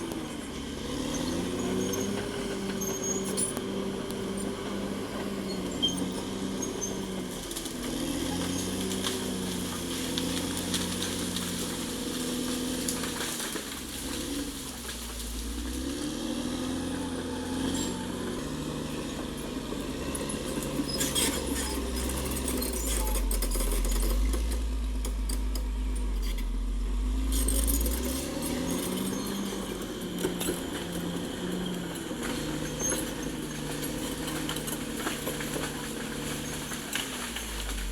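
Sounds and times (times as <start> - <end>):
bulldozer diesel engine: 0.0 - 37.9.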